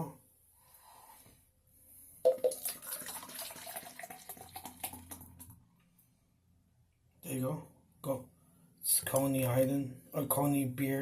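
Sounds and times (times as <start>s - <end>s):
beer pouring and fizzing: 2.2s - 5.5s.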